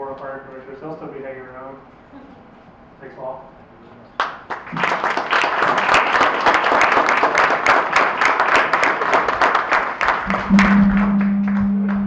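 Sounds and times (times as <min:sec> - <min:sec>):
audience applauding: 0:04.2 - 0:12.0
low steady hum: 0:10.2 - 0:12.0.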